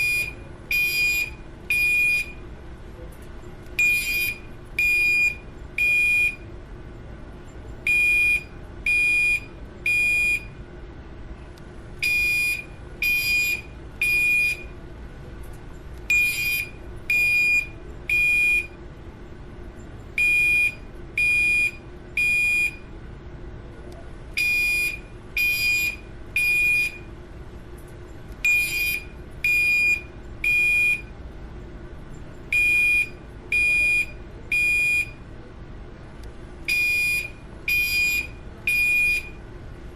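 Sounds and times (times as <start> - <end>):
fire alarm beeping: 0.0 - 2.5, 3.8 - 6.5, 7.8 - 10.6, 12.0 - 14.8, 16.1 - 18.8, 20.2 - 22.9, 24.4 - 27.1, 28.4 - 31.1, 32.5 - 35.2, 36.6 - 39.4
faint steady hum: 0.0 - 39.9.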